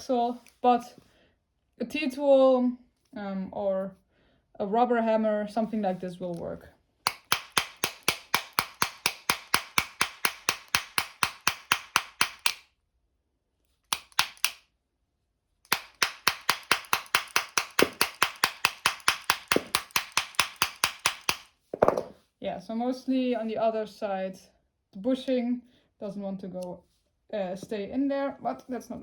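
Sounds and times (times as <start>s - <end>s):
tool tapping metal axle: 7.0s - 12.6s, 15.7s - 22.2s.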